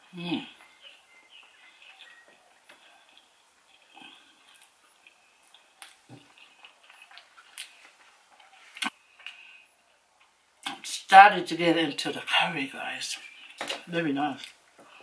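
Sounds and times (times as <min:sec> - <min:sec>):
close chewing: 0:00.5 - 0:09.4.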